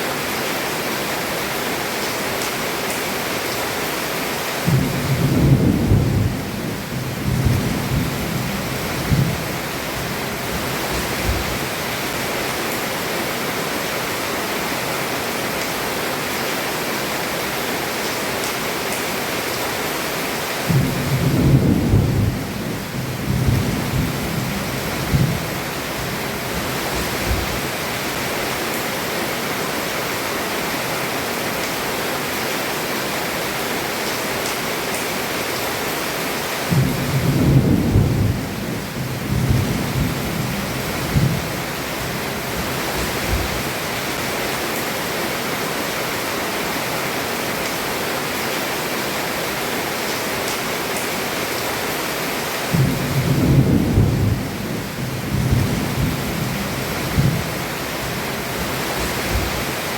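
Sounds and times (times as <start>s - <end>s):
heavy rain on a roof: 0.0s - 59.9s
thunder rumbling: 4.6s - 11.7s, 20.7s - 27.7s, 36.7s - 43.8s, 52.7s - 59.7s.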